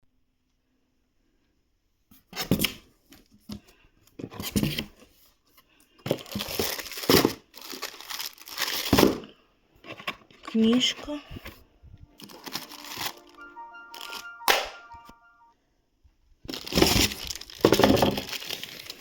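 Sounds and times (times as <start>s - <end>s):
packaging tearing and crinkling: 6.2s - 9.2s, 16.6s - 19.0s.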